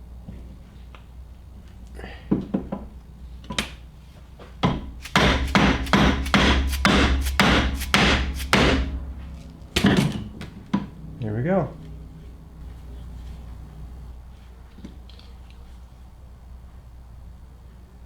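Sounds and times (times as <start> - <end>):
mallet striking: 4.8 - 9.5.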